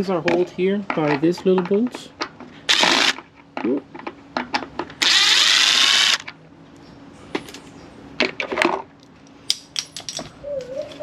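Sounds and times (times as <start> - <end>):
power driver whirring: 2.7 - 3.2, 5.0 - 6.3.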